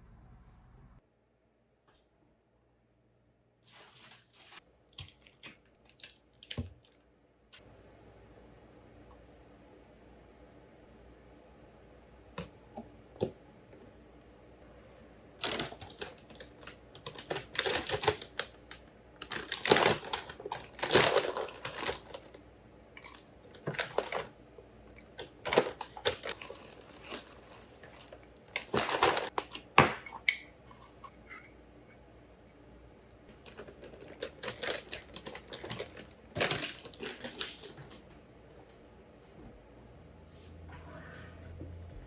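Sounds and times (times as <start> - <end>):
rustling of handled objects: 25.0 - 29.8.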